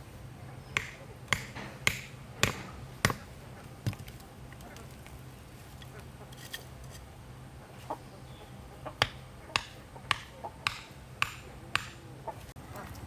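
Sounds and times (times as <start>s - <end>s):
low steady hum: 0.0s - 13.0s
sharp knocks: 0.8s - 3.2s.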